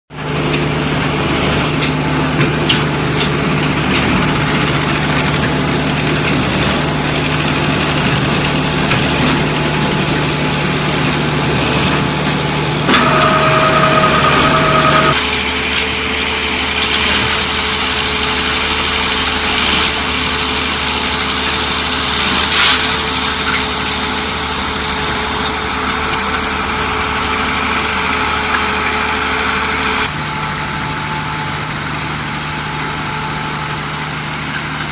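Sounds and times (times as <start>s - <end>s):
diesel engine running: 0.1s - 34.9s
two-tone beep: 13.0s - 15.2s.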